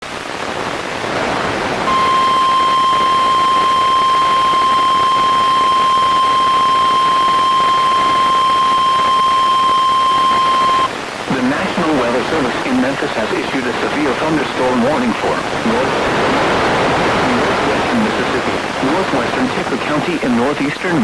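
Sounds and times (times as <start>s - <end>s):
radio static hiss: 0.0s - 21.0s
steady alarm tone: 1.9s - 10.9s.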